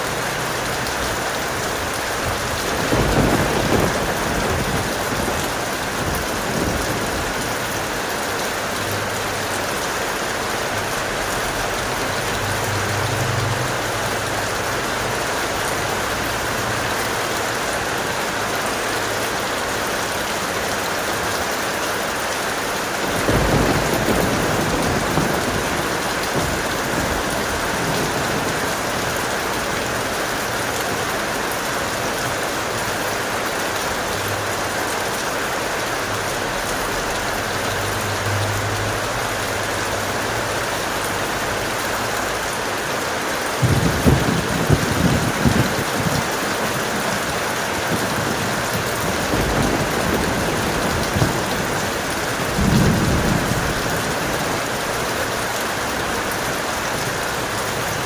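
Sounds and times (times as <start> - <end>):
heavy rain: 0.0 - 58.0
thunder rumbling: 1.7 - 8.1, 23.0 - 31.0, 43.6 - 57.2.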